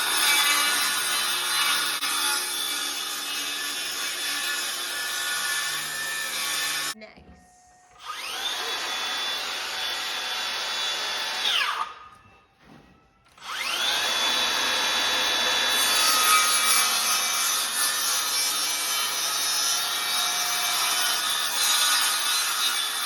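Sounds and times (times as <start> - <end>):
tool cutting into wood: 0.0 - 7.0, 8.0 - 12.0, 13.4 - 23.0
power tool motor whining: 8.0 - 11.9, 13.4 - 17.8.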